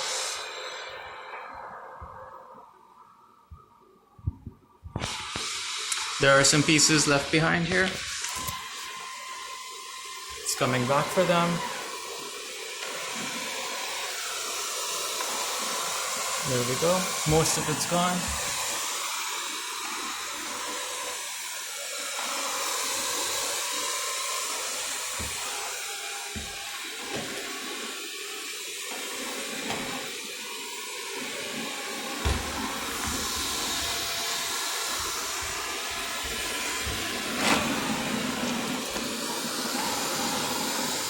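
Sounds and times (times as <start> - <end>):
robot vacuum running: 5.0 - 41.0.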